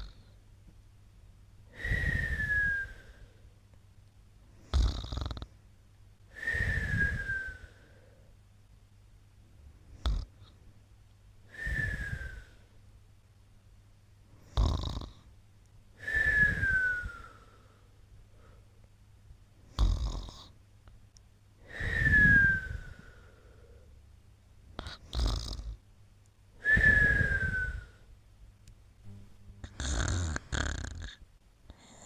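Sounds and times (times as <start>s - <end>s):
snoring with whistling breath: 1.8s - 3.2s, 4.7s - 5.5s, 6.4s - 8.1s, 11.5s - 12.6s, 14.5s - 15.2s, 16.0s - 17.7s, 19.8s - 20.5s, 21.7s - 23.4s, 24.8s - 25.8s, 26.6s - 28.0s, 29.6s - 31.2s.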